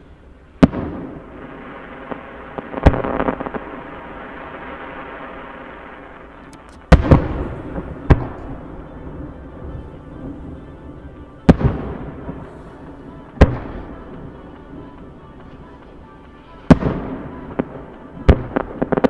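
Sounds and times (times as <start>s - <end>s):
fireworks bangs with rumble: 0.6s - 3.8s, 6.9s - 8.5s, 11.4s - 12.6s, 13.3s - 14.6s, 16.7s - 19.0s.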